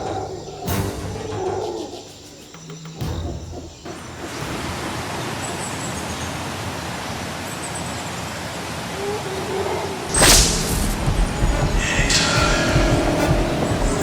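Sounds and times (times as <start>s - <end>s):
steady rushing noise: 3.8s - 9.0s, 10.0s - 14.0s
sudden loud burst: 10.1s - 14.0s.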